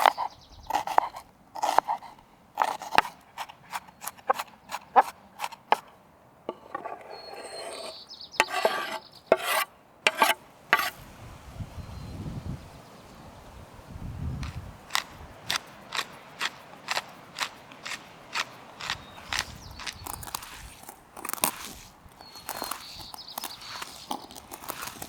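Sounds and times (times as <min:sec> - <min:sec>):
rubbing scrape: 0:06.7 - 0:11.1, 0:14.4 - 0:25.0.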